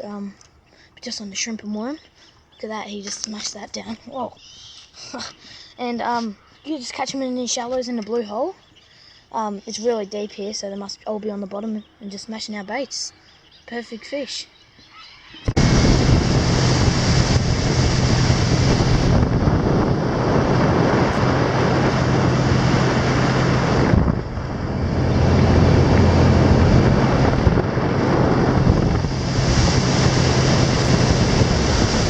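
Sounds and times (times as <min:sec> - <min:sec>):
steady low drone: 0:15.5 - 0:32.0
strong wind buffeting microphone: 0:15.5 - 0:32.0
rushing water: 0:15.6 - 0:32.0.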